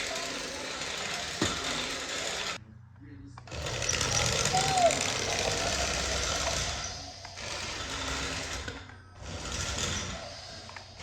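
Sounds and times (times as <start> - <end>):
toy train motor whirring: 0.0 - 2.6, 3.5 - 11.0.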